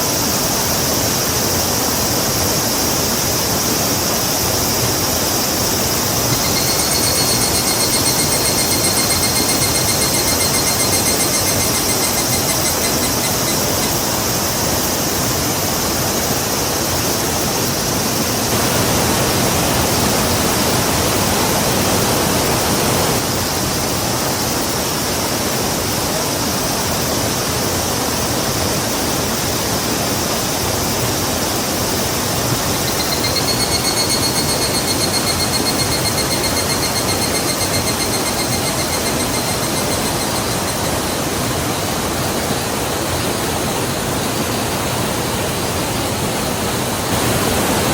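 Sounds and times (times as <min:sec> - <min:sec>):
river water rushing: 0:00.0 - 0:47.9
high pulsing trill: 0:05.8 - 0:14.1, 0:32.8 - 0:41.2.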